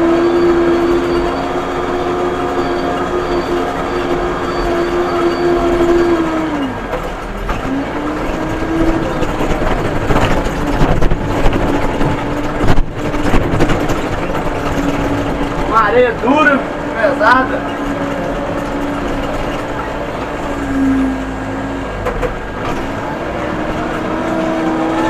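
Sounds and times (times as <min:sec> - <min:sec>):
backhoe diesel engine running: 0:00.0 - 0:25.0
metal clanks and knocks: 0:06.6 - 0:25.0.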